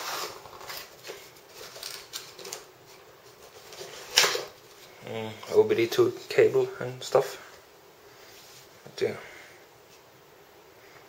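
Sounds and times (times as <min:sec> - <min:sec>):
packaging rustling: 0:00.0 - 0:04.9.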